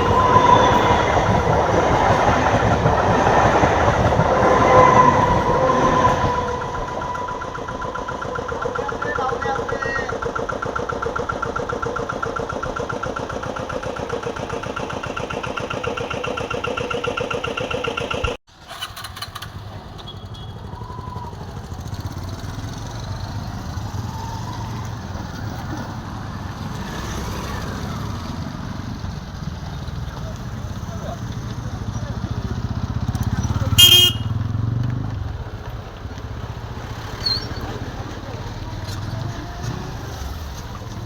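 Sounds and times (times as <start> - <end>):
engine running with pulsing: 0.0 - 18.4
low traffic rumble: 0.0 - 41.0.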